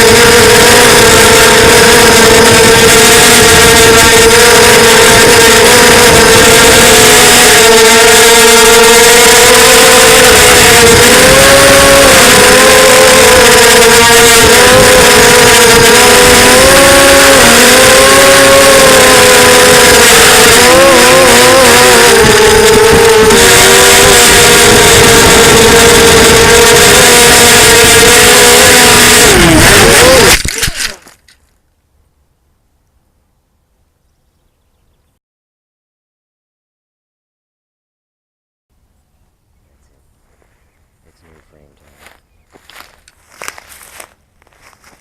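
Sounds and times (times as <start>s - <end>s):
quadcopter motors whining: 0.0s - 31.4s, 41.1s - 45.0s.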